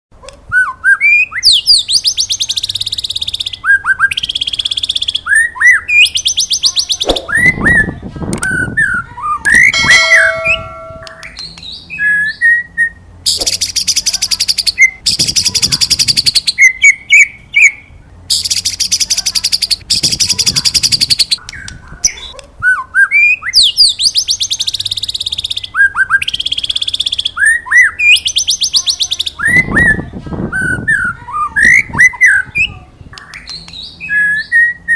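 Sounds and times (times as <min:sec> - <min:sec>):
bird whistles and buzzing trills: 0:00.6 - 0:22.2.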